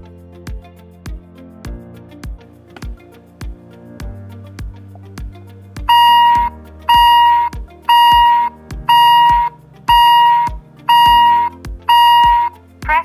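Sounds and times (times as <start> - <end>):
background music with steady beat: 0.0 - 13.0
smart lock beeping: 5.9 - 13.0.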